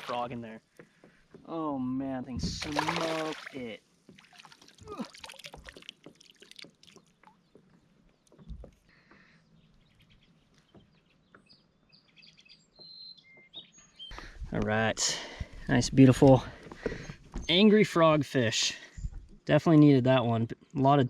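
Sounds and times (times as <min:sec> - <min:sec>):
high bird chirps: 0:09.4 - 0:14.2.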